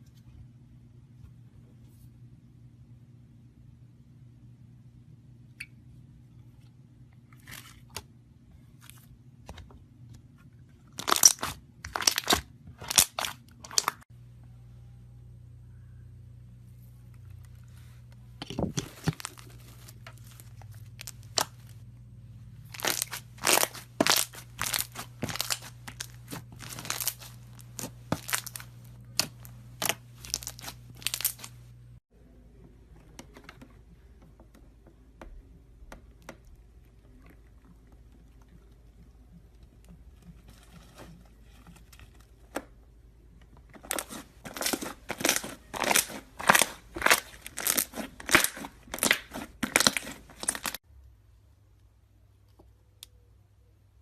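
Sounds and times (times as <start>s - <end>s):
slime crackling and popping: 11.0s - 14.0s, 22.7s - 31.6s, 43.8s - 50.8s.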